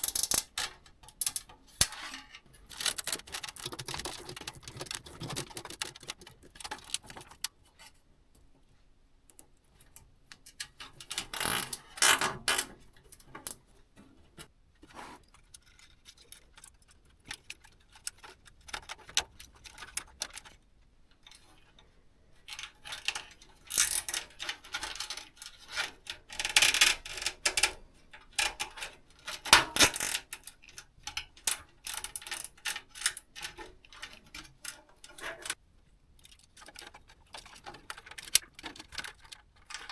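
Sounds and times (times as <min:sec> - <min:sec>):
small hardware clicking and clattering: 0:00.0 - 0:07.9.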